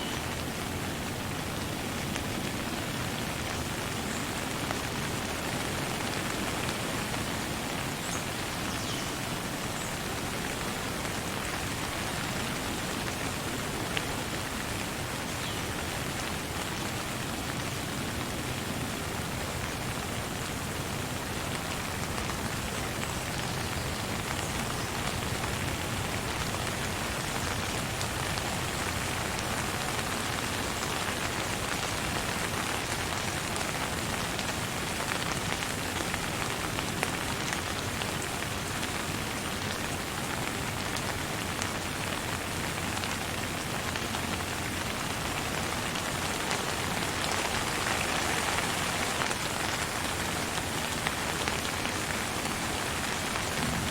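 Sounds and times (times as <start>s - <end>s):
steady rain: 0.0s - 53.9s.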